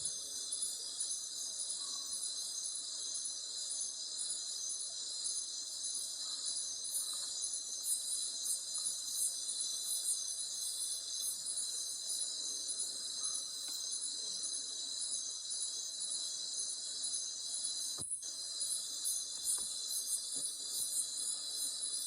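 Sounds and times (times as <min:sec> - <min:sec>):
flickering insect chirps: 0:13.1 - 0:22.0.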